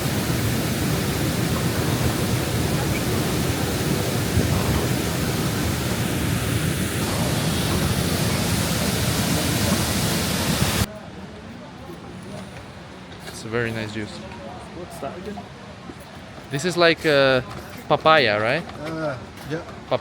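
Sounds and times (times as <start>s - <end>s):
rushing of falling water: 0.0s - 10.9s.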